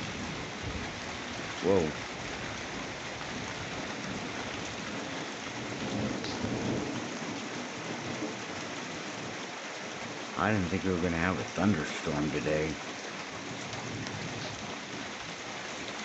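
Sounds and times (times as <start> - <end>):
low rumble of thunder: 0.0 - 1.4, 2.3 - 9.0
steady rain falling: 0.0 - 16.0.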